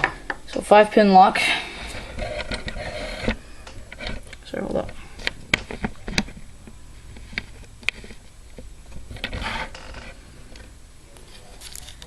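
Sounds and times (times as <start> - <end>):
scrape or rattle: 2.0 - 3.4.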